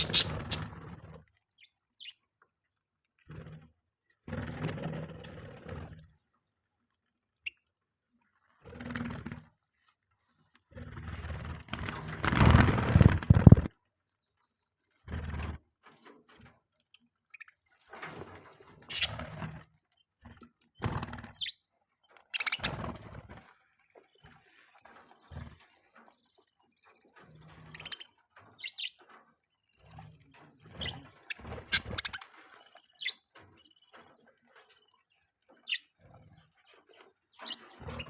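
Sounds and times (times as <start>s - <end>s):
budgerigars chirping: 0.0s - 0.6s, 18.9s - 19.1s, 22.4s - 22.7s, 30.7s - 32.3s.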